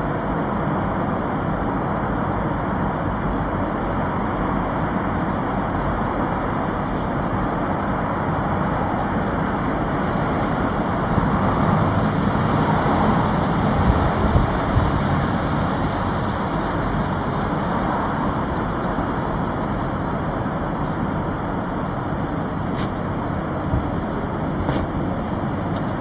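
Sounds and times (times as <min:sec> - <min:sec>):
steady rushing rumbling noise: 0:00.0 - 0:26.0.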